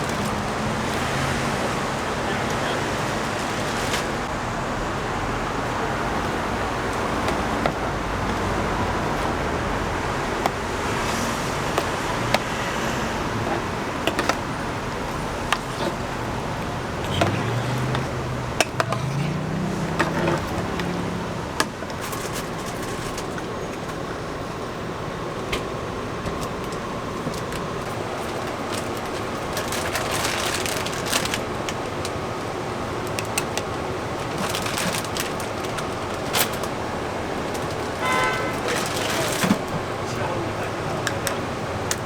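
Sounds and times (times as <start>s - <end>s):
low engine hum: 0.0s - 33.0s
traffic noise: 0.0s - 42.0s.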